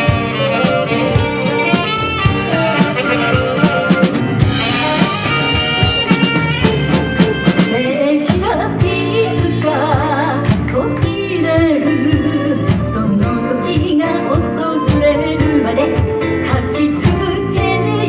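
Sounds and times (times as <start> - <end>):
lead melody with wide vibrato: 0.0 - 17.0
bass: 0.0 - 18.0
drums: 0.0 - 18.0
keyboards: 0.0 - 18.0
pop band playing: 0.0 - 18.0.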